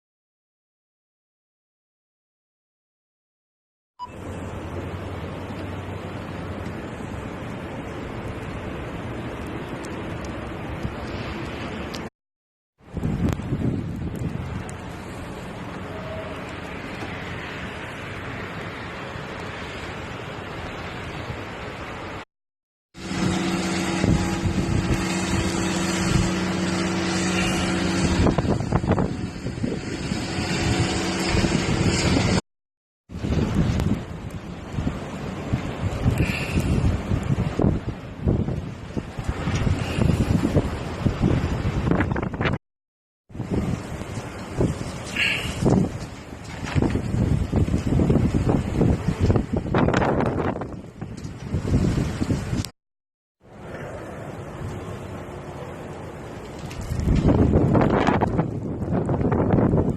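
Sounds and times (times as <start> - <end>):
low mechanical hum: 23.0 - 32.3
blizzard wind rushing: 23.0 - 32.4, 33.1 - 42.6, 43.3 - 52.7, 53.4 - 59.9
low microphone rumble: 23.0 - 32.4.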